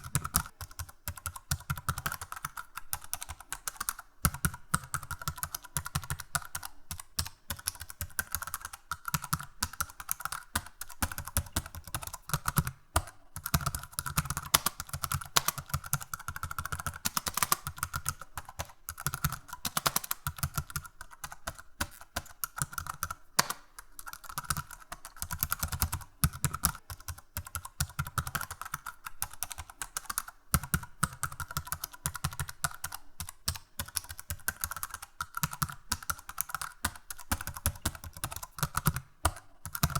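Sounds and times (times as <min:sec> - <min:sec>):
keyboard typing: 0:00.0 - 0:39.9.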